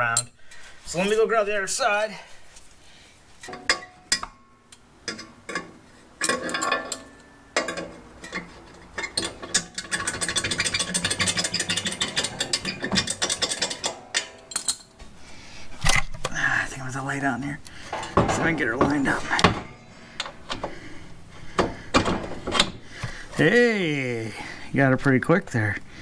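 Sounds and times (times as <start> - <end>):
metal clinks and clanks: 3.4 - 15.0.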